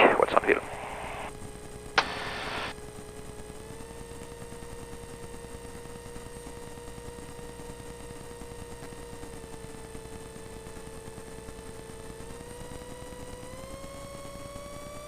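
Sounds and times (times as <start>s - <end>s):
radio hiss burst: 0.0s - 1.3s, 2.0s - 2.7s
aircraft engine drone: 0.0s - 10.6s.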